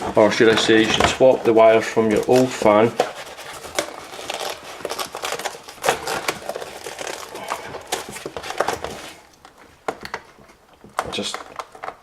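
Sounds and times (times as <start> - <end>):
rustling of wiring: 0.0 - 12.0.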